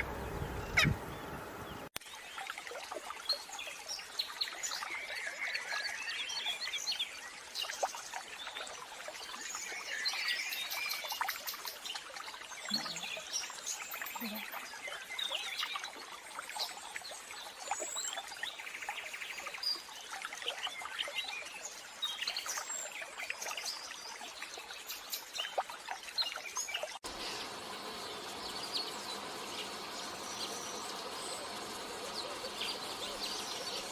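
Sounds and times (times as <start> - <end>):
bird chirps: 0.0 - 1.9, 27.1 - 33.9
insect calls: 0.0 - 1.9, 27.0 - 33.9
faint hiss: 27.1 - 33.9.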